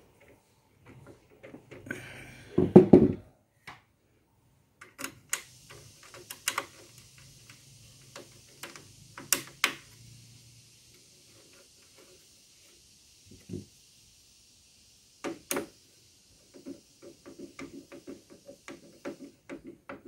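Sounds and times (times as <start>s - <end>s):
dull knock: 2.6s - 3.2s.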